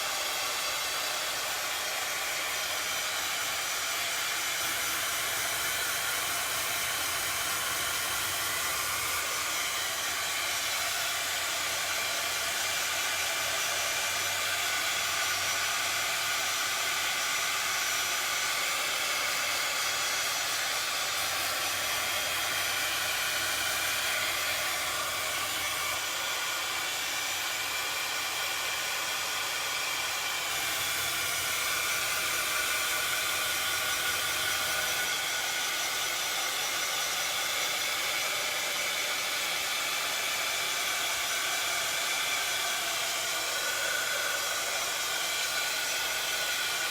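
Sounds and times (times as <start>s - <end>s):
heat tool blowing hiss: 0.0s - 46.9s.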